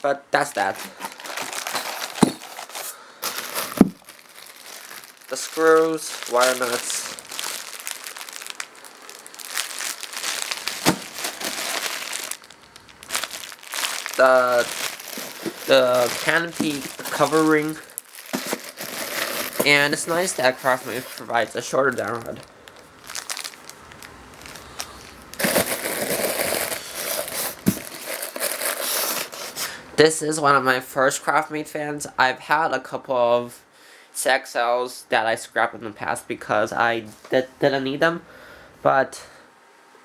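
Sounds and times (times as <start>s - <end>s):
plastic packaging crinkling: 0.4s - 29.7s.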